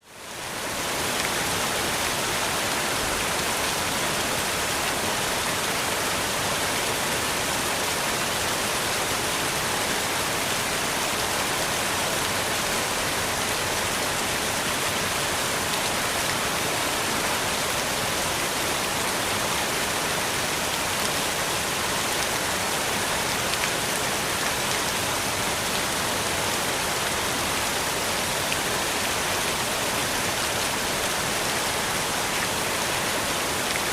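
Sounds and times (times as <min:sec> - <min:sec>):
fountain water splashing: 0:00.1 - 0:33.9.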